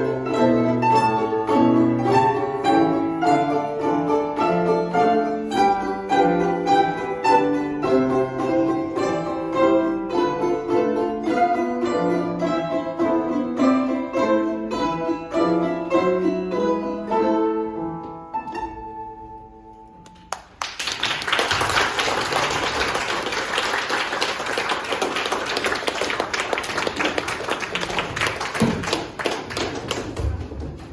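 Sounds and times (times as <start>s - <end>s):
plucked string instrument: 0.0s - 20.3s
audience applause: 20.3s - 30.8s.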